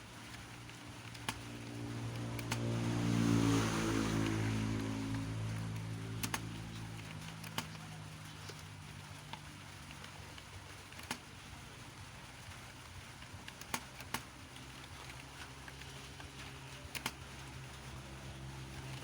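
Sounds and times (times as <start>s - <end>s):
steady low hum: 0.0s - 19.0s
sharp clicks: 0.2s - 19.0s.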